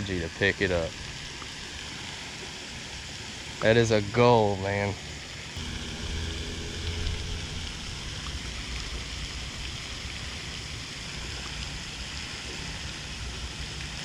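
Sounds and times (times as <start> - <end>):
steady outdoor hiss: 0.0 - 14.0
low uneven rumble: 5.4 - 14.0.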